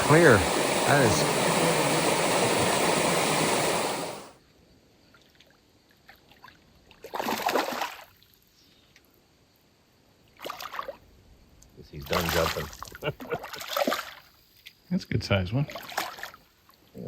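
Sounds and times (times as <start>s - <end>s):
water rushing over rock: 0.0s - 4.3s.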